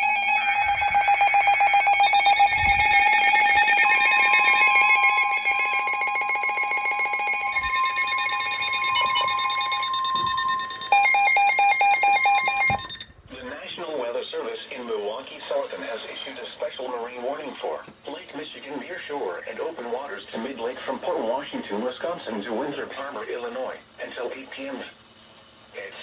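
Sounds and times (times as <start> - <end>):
rapidly pulsing beep: 0.0 - 13.2
steady high tone: 0.0 - 13.2.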